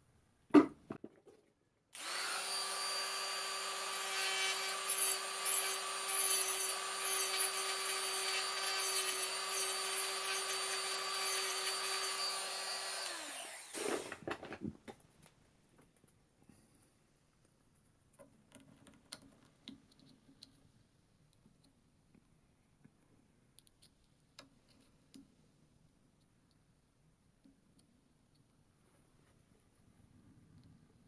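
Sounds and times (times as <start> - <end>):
handheld power tool rasping: 2.0 - 14.2.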